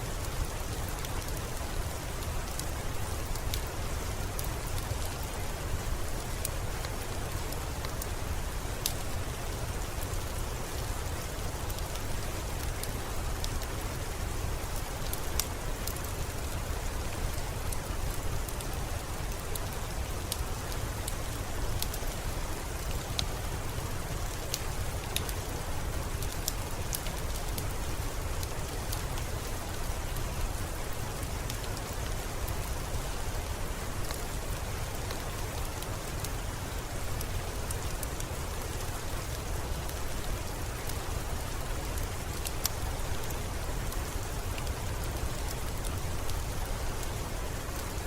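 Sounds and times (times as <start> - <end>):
steady rain: 0.0 - 48.0
wood fire crackling: 0.4 - 48.0.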